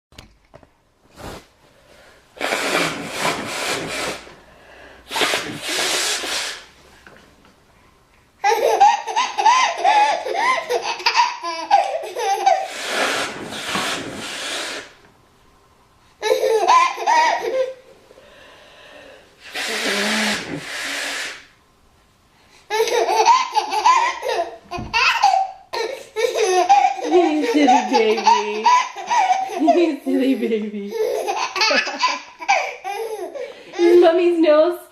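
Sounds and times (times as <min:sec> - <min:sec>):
woman blowing her nose: 0:02.4 - 0:06.8, 0:12.5 - 0:15.0, 0:19.4 - 0:21.6
baby laughing: 0:08.4 - 0:12.9, 0:16.2 - 0:17.8, 0:22.7 - 0:34.0.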